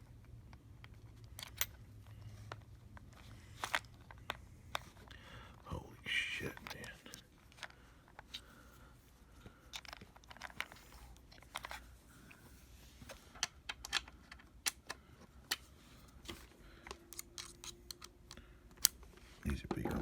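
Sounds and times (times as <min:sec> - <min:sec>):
plastic housing being handled: 0:19.6 - 0:20.0.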